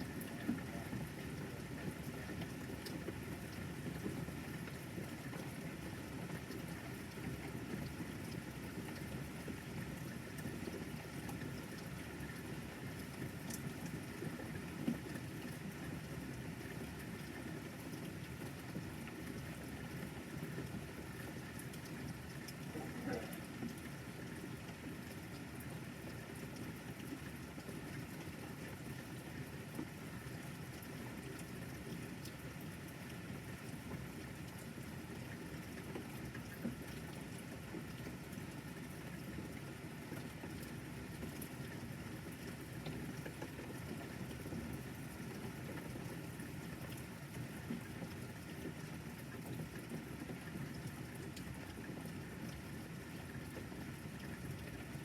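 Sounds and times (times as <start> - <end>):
rain falling: 0.0 - 55.0
raindrop ticks: 21.5 - 24.0.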